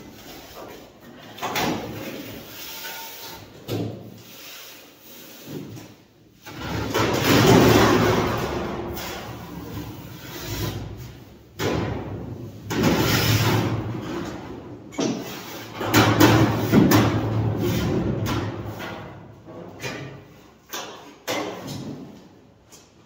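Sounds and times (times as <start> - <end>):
metal sheet scraping and rumbling: 6.4 - 19.9.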